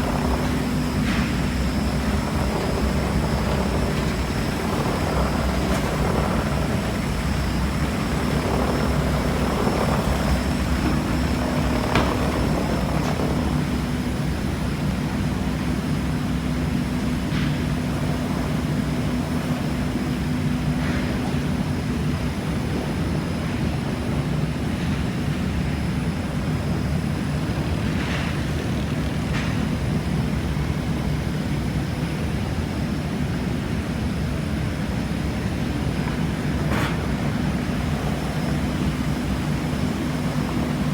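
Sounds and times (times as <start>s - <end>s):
sanding machine humming: 0.0s - 15.2s.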